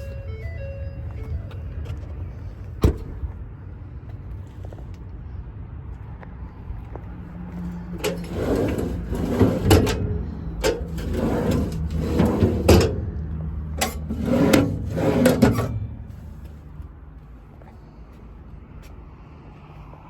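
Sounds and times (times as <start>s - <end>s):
metal rattling and clattering: 7.9s - 16.0s.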